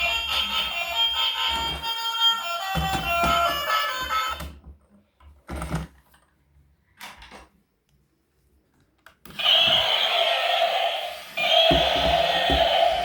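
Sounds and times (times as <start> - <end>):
toy vehicle electronic sound effect: 9.4 - 13.0.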